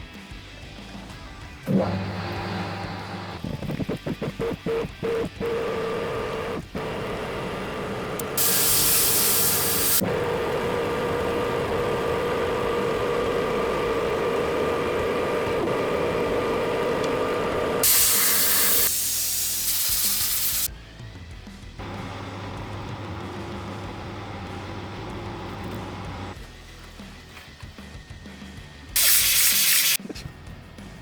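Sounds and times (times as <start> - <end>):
metal lathe humming: 1.7 - 3.4, 4.6 - 18.9, 21.8 - 26.4
loud hissing spray: 8.4 - 10.0, 17.8 - 20.7, 29.0 - 30.0.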